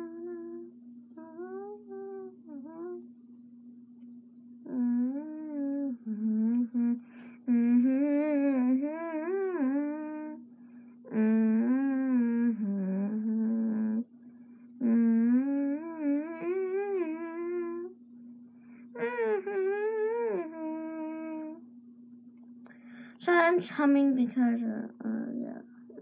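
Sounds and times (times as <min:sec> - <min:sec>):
girl humming: 0:00.0 - 0:03.1, 0:04.6 - 0:10.4, 0:11.1 - 0:14.1, 0:14.8 - 0:18.0, 0:18.9 - 0:21.6.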